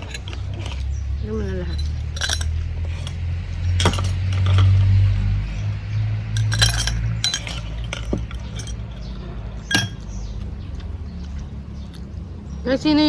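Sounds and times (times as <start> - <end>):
utensils clinking on plates: 0.0 - 5.0, 6.3 - 10.2.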